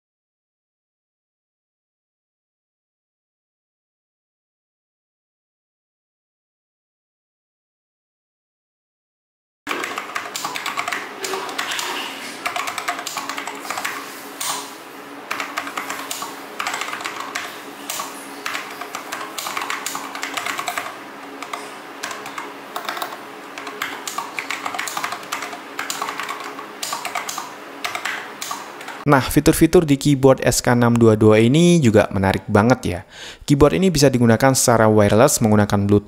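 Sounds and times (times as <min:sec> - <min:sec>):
fast mechanical keyboard typing: 0:09.7 - 0:29.0.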